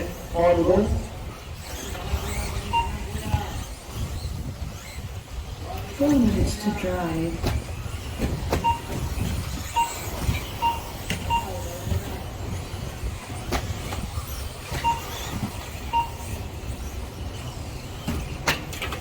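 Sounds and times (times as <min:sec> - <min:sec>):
short electronic beeps: 0:02.6 - 0:03.7, 0:08.6 - 0:12.0, 0:14.7 - 0:16.8.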